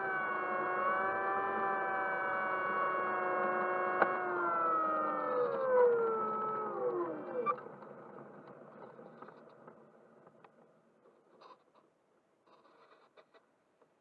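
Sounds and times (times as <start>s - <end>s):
small electric motors whining: 0.0s - 7.7s.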